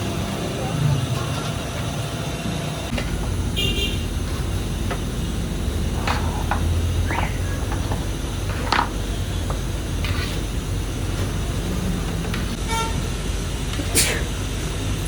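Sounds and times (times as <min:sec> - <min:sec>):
traffic engine rumble: 0:00.0 - 0:15.0
car horn toot: 0:03.5 - 0:04.2, 0:12.6 - 0:13.0.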